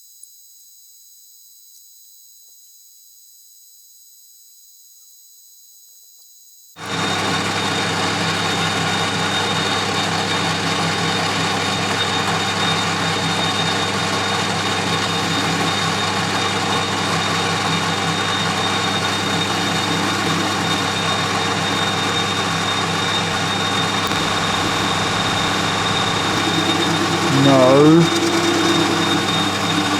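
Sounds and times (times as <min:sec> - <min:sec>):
machine tool whining and humming: 0:06.8 - 0:29.9.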